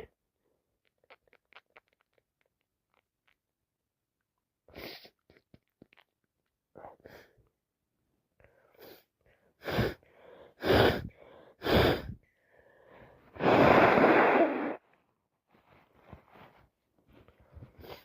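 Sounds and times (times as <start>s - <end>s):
noisy breaths: 8.4s - 14.7s
person sneezing: 13.4s - 14.8s.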